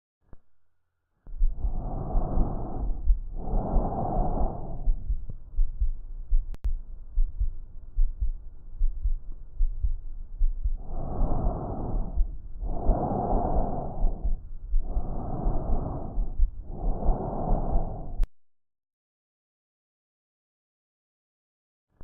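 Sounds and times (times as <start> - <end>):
rushing breath sound: 1.3 - 6.0, 10.4 - 18.3
heartbeat thumps: 1.3 - 18.3.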